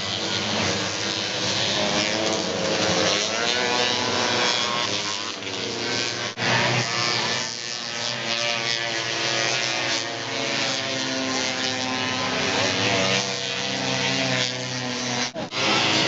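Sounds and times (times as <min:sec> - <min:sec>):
snowmobile engines at high revs: 0:00.0 - 0:16.0.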